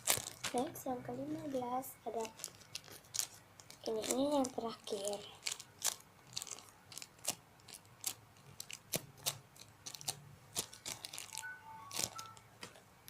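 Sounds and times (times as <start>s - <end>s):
squishy toy crinkly clicks: 2.2s - 12.4s.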